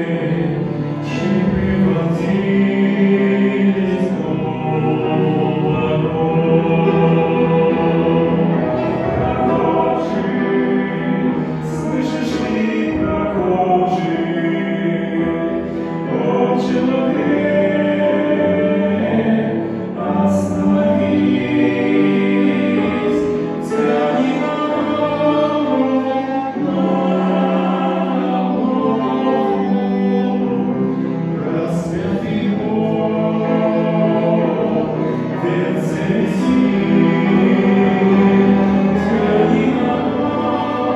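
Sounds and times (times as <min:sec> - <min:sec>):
choir singing a hymn: 0:00.0 - 0:40.9.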